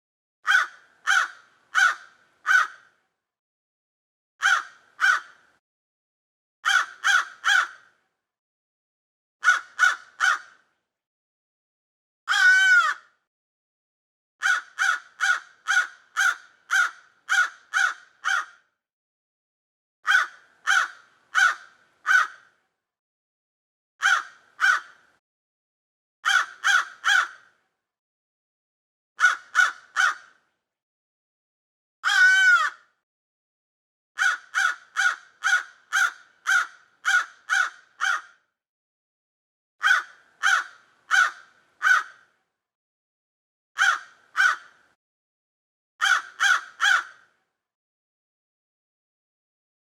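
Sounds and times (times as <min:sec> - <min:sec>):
crow cawing: 0:00.5 - 0:03.0, 0:04.4 - 0:05.4, 0:06.6 - 0:08.0, 0:09.4 - 0:10.6, 0:12.3 - 0:13.1, 0:14.4 - 0:18.6, 0:20.1 - 0:22.5, 0:24.0 - 0:25.0, 0:26.2 - 0:27.5, 0:29.2 - 0:30.4, 0:32.0 - 0:32.9, 0:34.2 - 0:38.4, 0:39.8 - 0:42.3, 0:43.8 - 0:44.8, 0:46.0 - 0:47.2.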